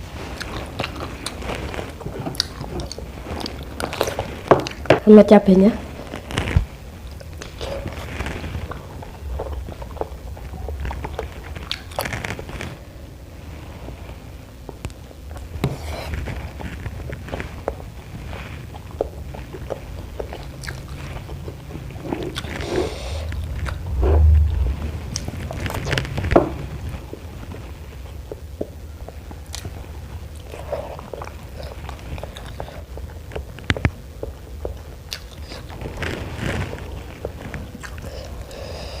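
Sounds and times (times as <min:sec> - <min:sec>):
chewing and biting food: 0:00.3 - 0:04.9, 0:06.1 - 0:12.8, 0:14.8 - 0:24.0, 0:28.2 - 0:38.7
low thump: 0:23.7 - 0:26.7.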